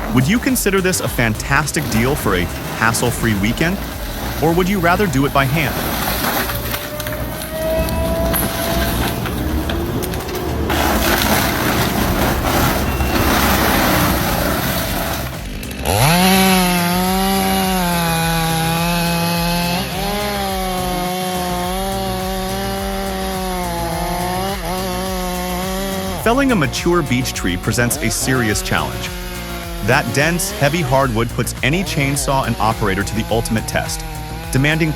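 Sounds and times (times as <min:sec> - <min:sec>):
chainsaw revving: 0:00.0 - 0:34.9
wood chipper grinding wood: 0:00.0 - 0:34.9.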